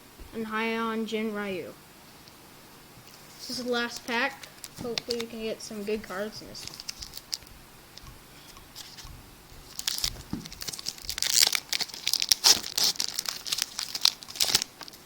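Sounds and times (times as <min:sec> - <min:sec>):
wrapper crackling: 0:03.1 - 0:07.5, 0:08.8 - 0:15.0.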